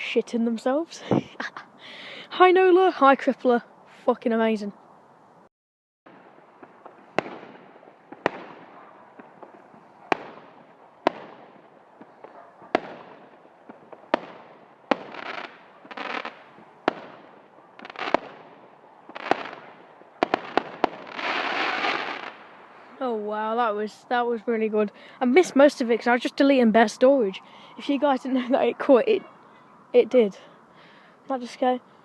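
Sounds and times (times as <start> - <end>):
fireworks bangs: 6.1 - 22.8
fireworks crackling: 6.1 - 24.0.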